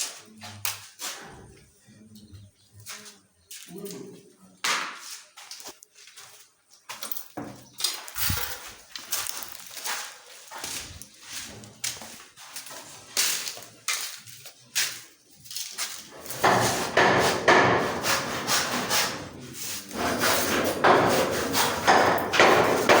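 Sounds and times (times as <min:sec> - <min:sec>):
scraping: 0:07.9 - 0:11.6
hammering on wood: 0:16.3 - 0:19.2, 0:20.0 - 0:23.0.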